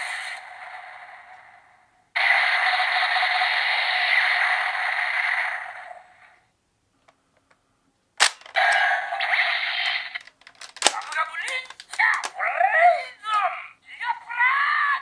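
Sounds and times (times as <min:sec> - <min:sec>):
toy gun sharp click: 0:08.2 - 0:08.8, 0:10.4 - 0:12.3
toy gun electronic sound effect: 0:10.6 - 0:12.3.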